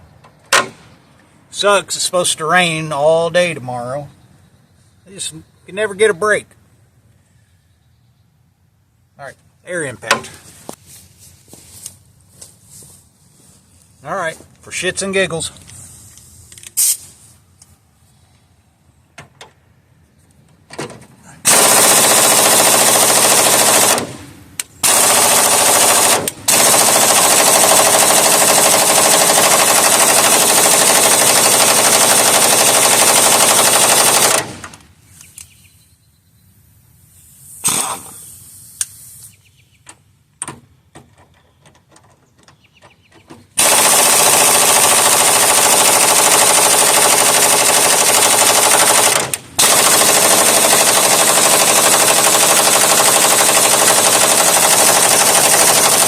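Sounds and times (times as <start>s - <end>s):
pneumatic impact wrench hammering: 16.7s - 17.0s, 20.8s - 34.8s, 37.6s - 38.3s, 43.6s - 56.0s.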